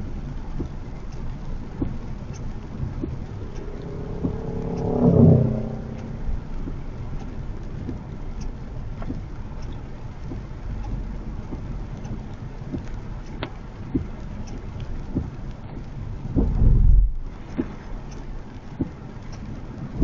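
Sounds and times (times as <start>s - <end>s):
road and rain noise: 0.0s - 20.0s
brief pitched sound: 3.1s - 6.7s.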